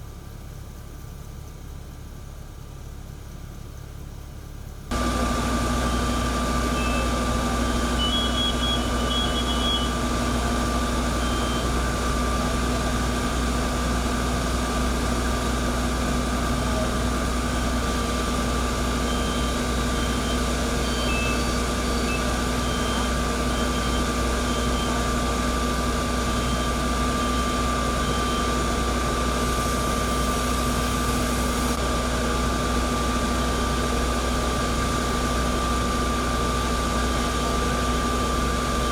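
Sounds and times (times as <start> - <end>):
fire engine running: 0.0 - 38.9
faint high beeps: 5.9 - 11.9, 18.9 - 31.6.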